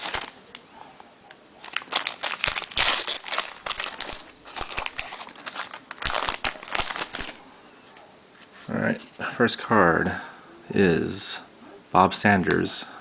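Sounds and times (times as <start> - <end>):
cards and wrapper crinkling: 0.0 - 0.6, 1.6 - 7.4.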